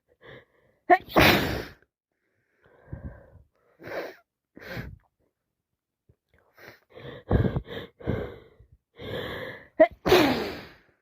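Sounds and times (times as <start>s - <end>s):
woman sneezing: 0.9s - 1.8s, 9.8s - 10.7s
woman breathing heavily: 2.2s - 5.1s, 6.5s - 9.8s.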